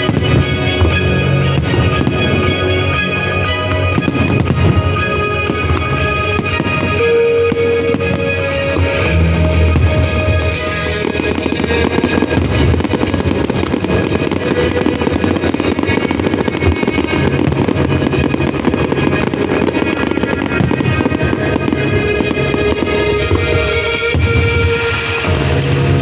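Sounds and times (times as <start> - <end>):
fireworks crackling bursts: 0.0 - 25.6
loud music: 0.0 - 26.0.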